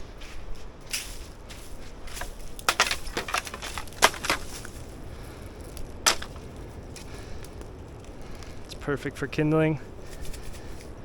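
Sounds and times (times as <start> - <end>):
driftwood sticks snapping: 1.0 - 8.8.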